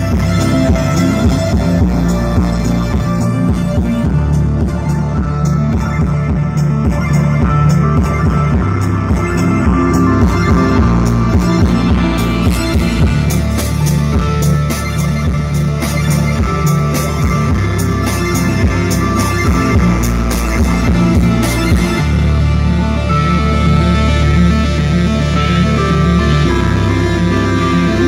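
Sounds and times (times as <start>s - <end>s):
loud rock music: 0.0s - 28.0s.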